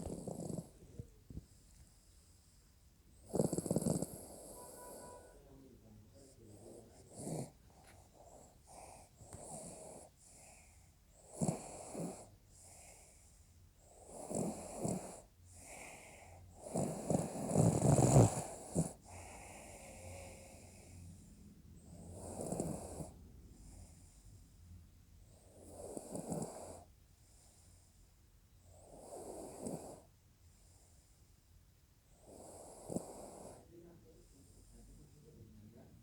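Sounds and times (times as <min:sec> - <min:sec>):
person snoring: 0:16.7 - 0:20.8.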